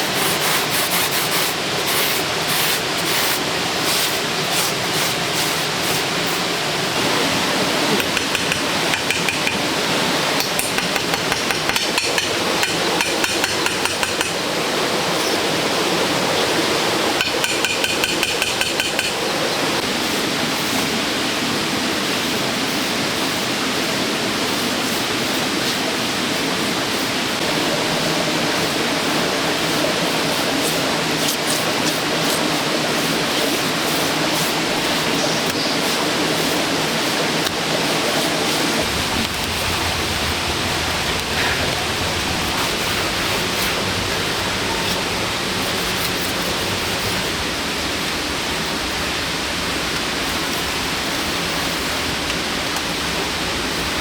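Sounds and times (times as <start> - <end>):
steady rushing noise: 3.4 - 31.9, 36.0 - 54.0
hand tool strikes: 8.0 - 9.7, 10.4 - 14.4, 17.2 - 19.2.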